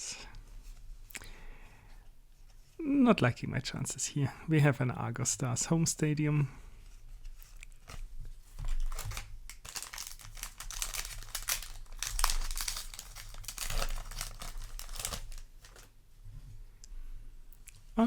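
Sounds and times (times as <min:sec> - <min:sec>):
foil wrapper crinkling: 0:07.3 - 0:15.9.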